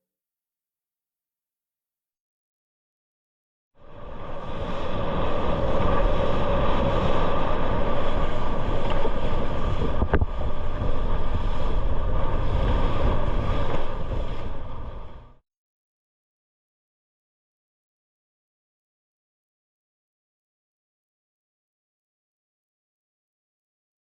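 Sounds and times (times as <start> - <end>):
sea rushing: 3.8 - 15.4.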